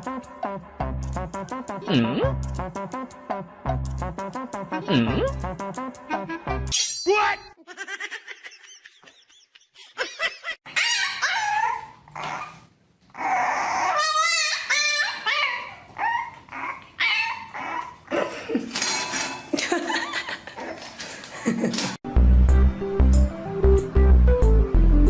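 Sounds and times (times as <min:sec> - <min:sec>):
pet whining and yelping: 0:10.7 - 0:18.1.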